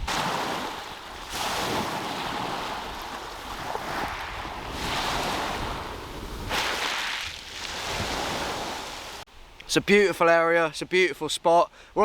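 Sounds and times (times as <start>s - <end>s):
sea waves breaking on shore: 0.0s - 9.5s
wind rumble on microphone: 1.4s - 6.7s.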